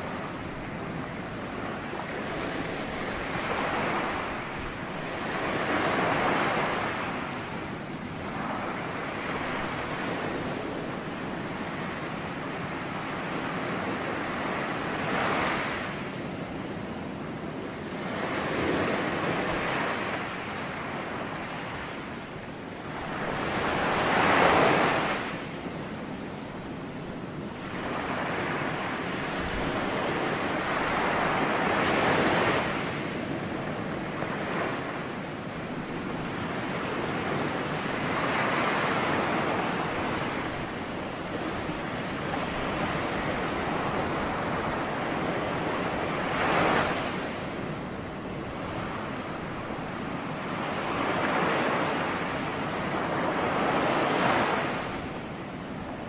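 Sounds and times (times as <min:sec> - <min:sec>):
ocean waves breaking on shore: 0:00.0 - 0:56.0.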